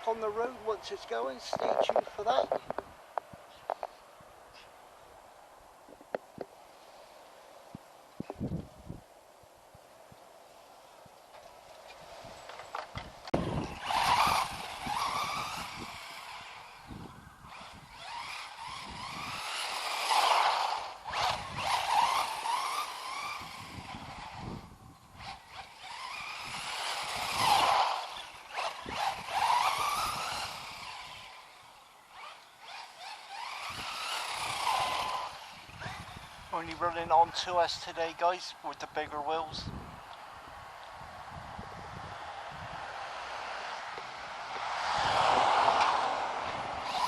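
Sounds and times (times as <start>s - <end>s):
rc car motor whine: 12.5s - 38.2s, 45.0s - 47.0s.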